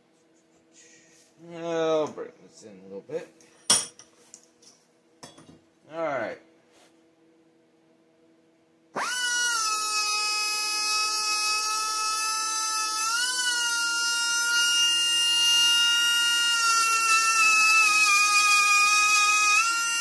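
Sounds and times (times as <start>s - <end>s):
rotary tool whine: 9.0s - 20.0s.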